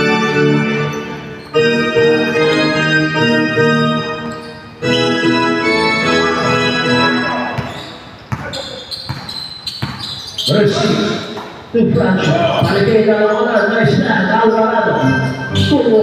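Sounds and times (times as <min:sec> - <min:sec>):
organ chords: 0:00.0 - 0:07.7, 0:13.9 - 0:16.0.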